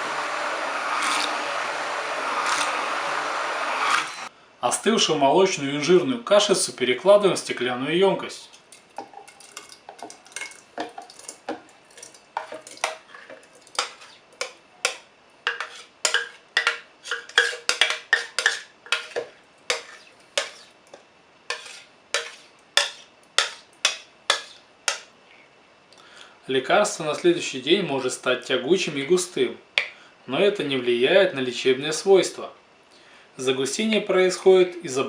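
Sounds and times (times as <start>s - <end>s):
spoon scooping thick paste: 21.5s - 23.6s.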